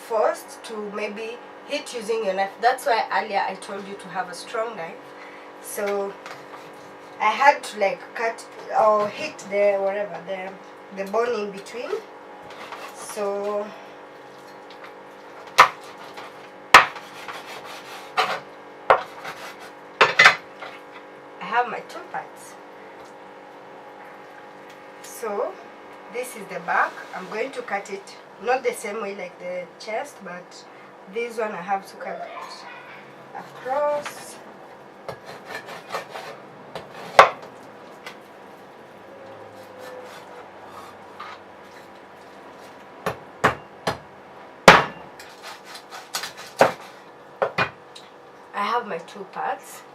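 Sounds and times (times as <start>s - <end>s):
knife chopping through bone: 16.8s - 19.6s, 35.1s - 37.4s.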